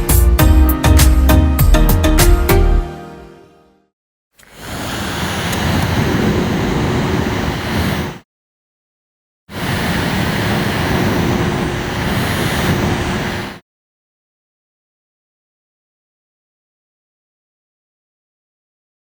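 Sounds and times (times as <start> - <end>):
air conditioner fan blowing: 4.4 - 8.2, 9.5 - 13.6.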